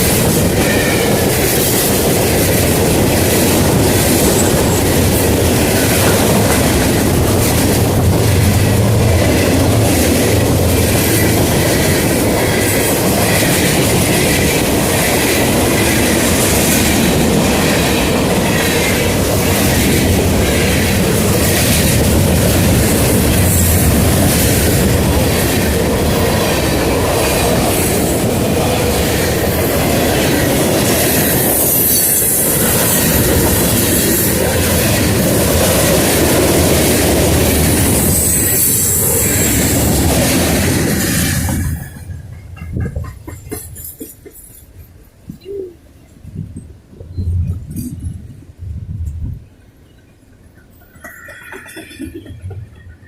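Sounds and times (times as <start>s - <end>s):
train wheels clacking over rail joints: 0.0s - 45.2s, 49.8s - 53.0s
high wheel squeal: 37.9s - 40.0s.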